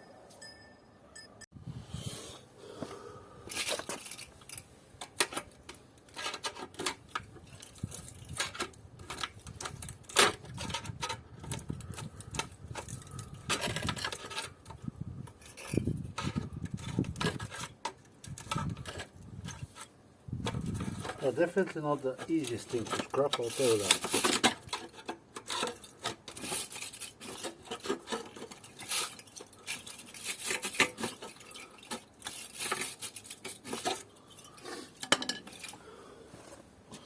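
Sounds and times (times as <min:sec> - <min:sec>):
hand tools clanking on metal: 0:21.0 - 0:35.8.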